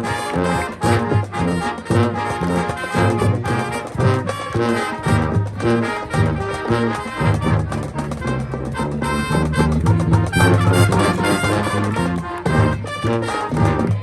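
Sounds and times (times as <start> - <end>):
marching band brass: 0.0 - 14.0
percussion beat: 0.0 - 14.0.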